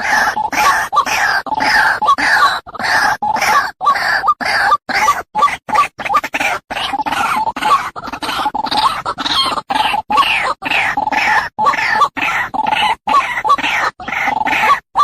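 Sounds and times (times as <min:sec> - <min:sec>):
bird harsh croaking calls: 0:00.0 - 0:15.0.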